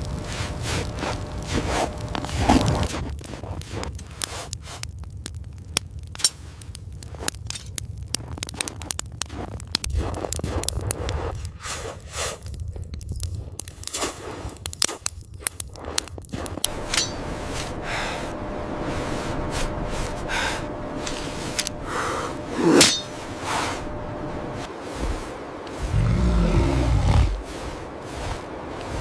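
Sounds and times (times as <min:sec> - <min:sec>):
low rumble: 0:00.0 - 0:03.0, 0:16.6 - 0:29.0.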